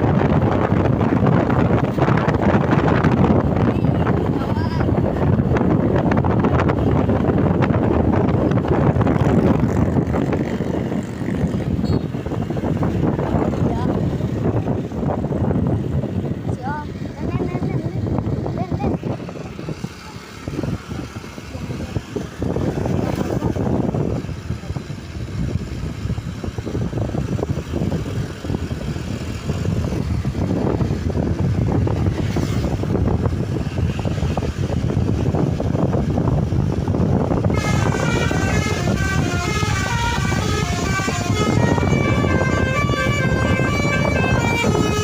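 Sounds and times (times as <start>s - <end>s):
low vehicle rumble: 0.0s - 45.0s
multi-tone air horn tune: 37.5s - 45.0s.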